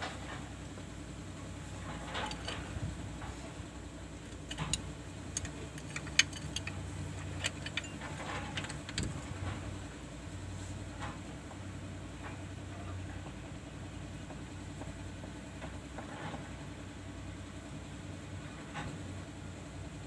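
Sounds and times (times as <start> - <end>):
hand tools clinking on metal: 2.1 - 2.7, 4.2 - 9.3.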